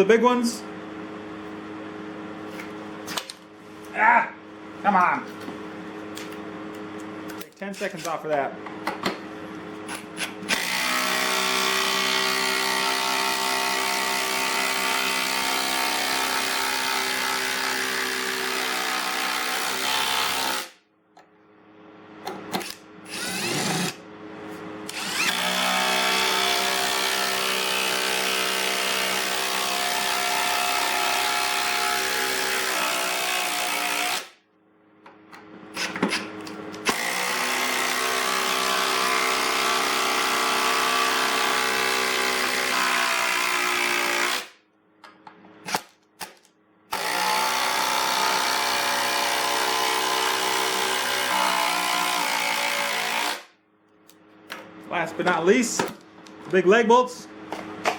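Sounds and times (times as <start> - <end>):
impact driver driving screws: 9.9 - 20.7, 22.4 - 24.0, 24.9 - 34.3, 35.8 - 44.5, 45.7 - 53.4.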